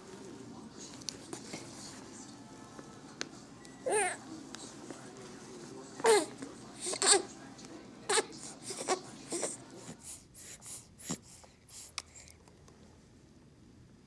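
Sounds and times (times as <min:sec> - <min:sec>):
baby whimpering: 0:08.1 - 0:09.6
baby breathing softly: 0:08.3 - 0:12.4.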